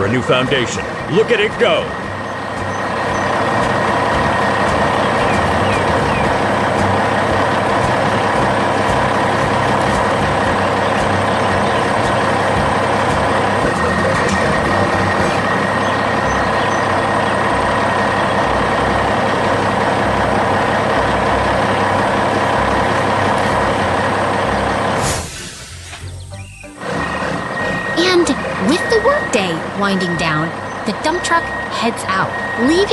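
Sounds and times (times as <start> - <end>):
dump truck engine rumbling: 0.0 - 32.9.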